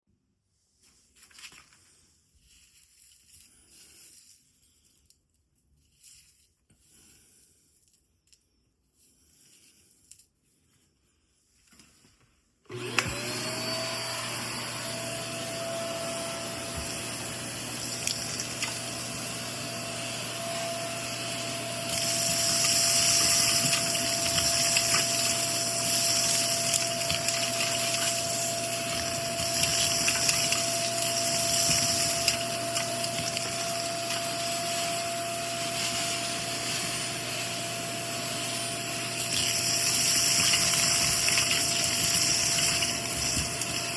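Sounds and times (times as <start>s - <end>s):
vacuum cleaner motor whine: 12.6s - 43.9s
vacuum air rushing hiss: 12.7s - 43.9s.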